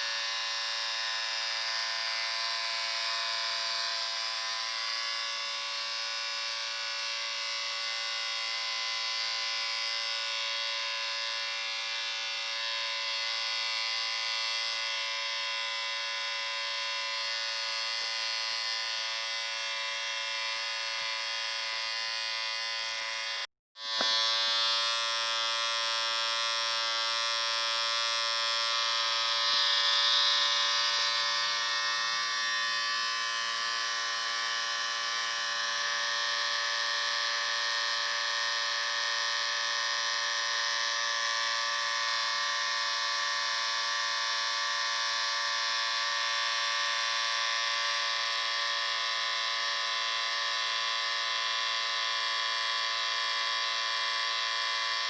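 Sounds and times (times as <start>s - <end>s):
electric shaver buzzing: 0.0s - 55.0s.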